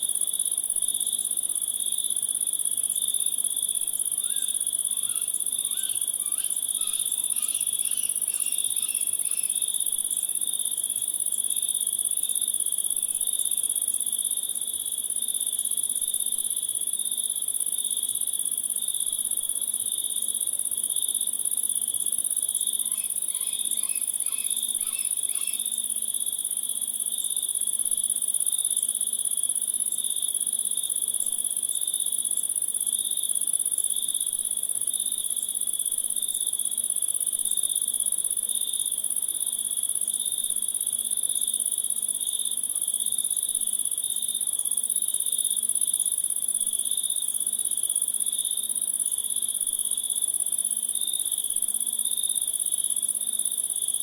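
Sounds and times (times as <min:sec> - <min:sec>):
crickets trilling: 0:02.4 - 0:12.3, 0:21.5 - 0:29.4.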